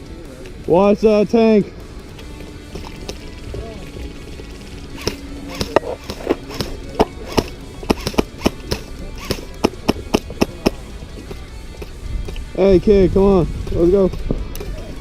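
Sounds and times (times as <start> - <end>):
background music: 0.0 - 15.0
airsoft guns firing: 5.0 - 10.8.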